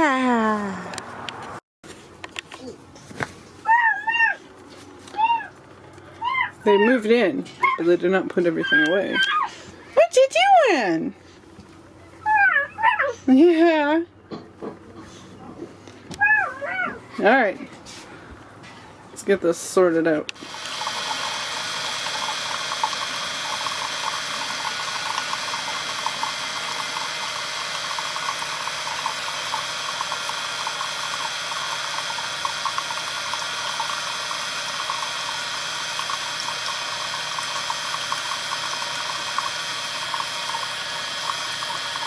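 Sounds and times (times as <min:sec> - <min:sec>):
water running with splashes: 0:20.4 - 0:42.0.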